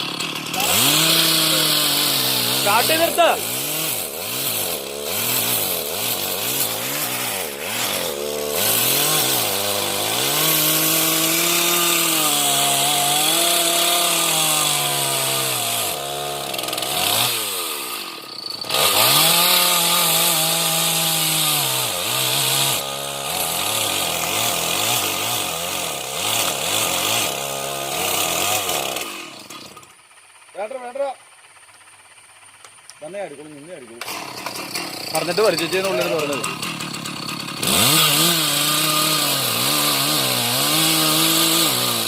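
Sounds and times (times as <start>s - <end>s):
chainsaw cutting wood: 0.0s - 30.0s, 33.9s - 42.0s.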